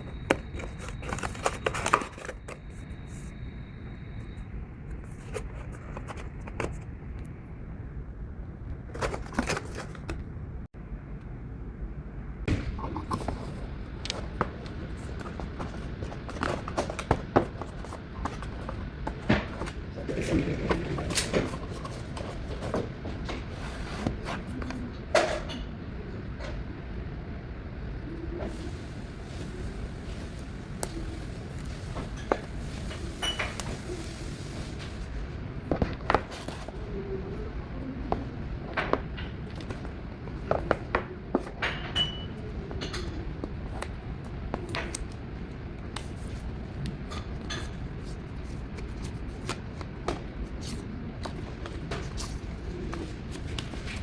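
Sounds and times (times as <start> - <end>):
packaging rustling: 0.0 - 2.9.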